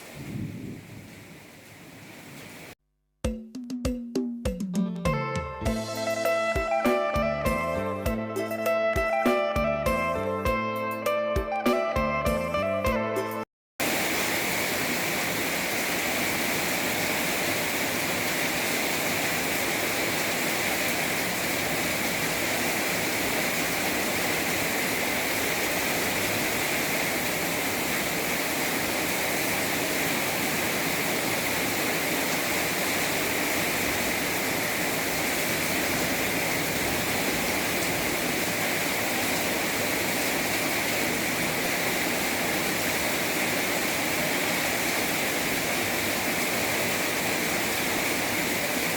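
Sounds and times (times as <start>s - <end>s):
heavy rain pouring: 0.0s - 2.8s, 13.8s - 48.9s.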